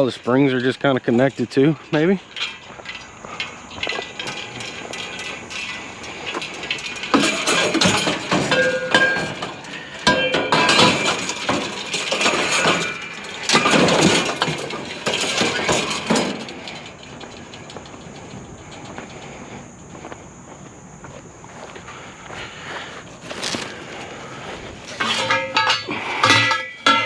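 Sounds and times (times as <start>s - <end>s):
hard metal knocks: 0.0s - 19.1s
short metallic rings: 0.0s - 19.5s, 24.7s - 27.0s
metal frame and springs clanking: 0.0s - 20.7s, 21.7s - 27.0s.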